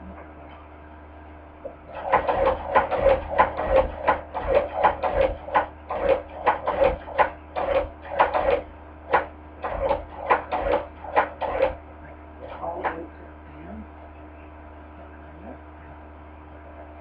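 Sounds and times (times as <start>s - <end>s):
hand-crank sewing machine clacking: 1.9s - 11.8s.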